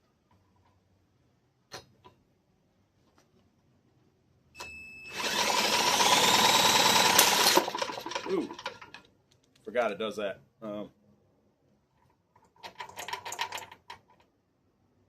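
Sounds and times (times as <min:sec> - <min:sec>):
mower engine whirring rattle: 0:05.2 - 0:09.0.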